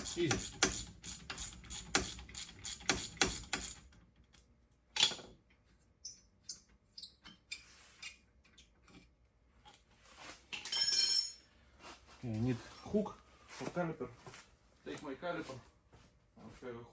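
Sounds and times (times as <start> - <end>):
ratchet wrench clicking: 0.0 - 3.9.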